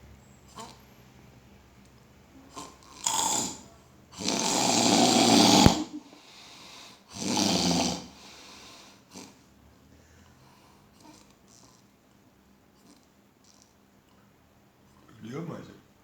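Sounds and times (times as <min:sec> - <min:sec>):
man snoring loudly: 0:03.0 - 0:05.9, 0:07.1 - 0:08.3.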